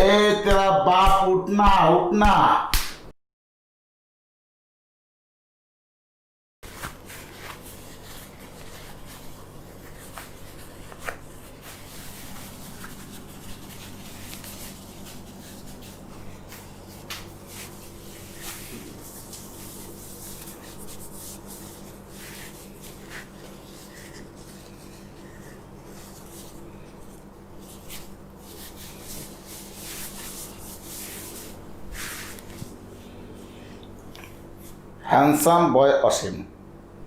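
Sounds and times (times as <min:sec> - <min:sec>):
faint rubbing and rustling: 0:06.6 - 0:33.6.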